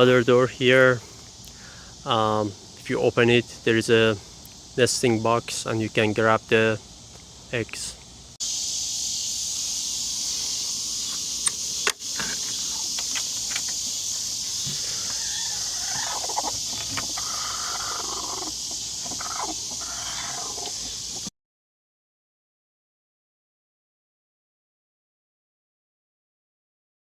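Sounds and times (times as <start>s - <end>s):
crickets and insects chirping: 0.0s - 21.3s
sharp clicks: 11.4s - 12.4s
chickens clucking: 12.2s - 21.3s.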